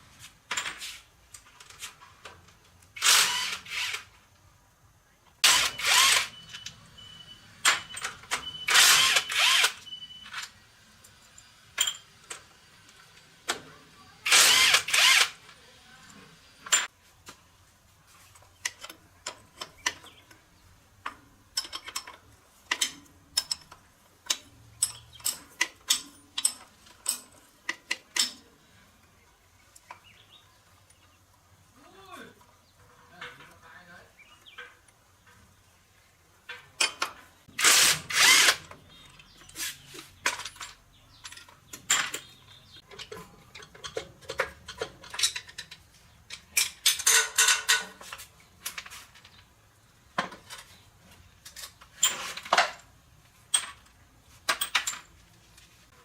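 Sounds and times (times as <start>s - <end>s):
power tool bursts: 3.0s - 4.1s, 5.4s - 6.6s, 8.6s - 10.4s, 14.2s - 15.4s, 37.5s - 38.7s
metallic clicks of hand tools: 21.0s - 28.5s.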